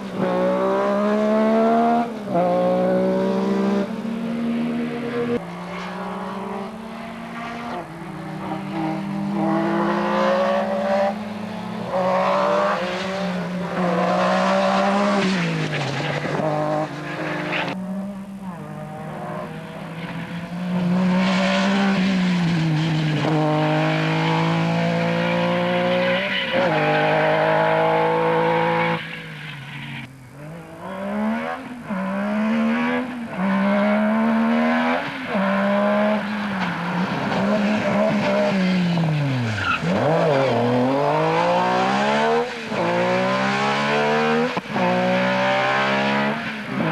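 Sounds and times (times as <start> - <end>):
rally car engine revving: 0.0 - 29.0, 29.7 - 46.9.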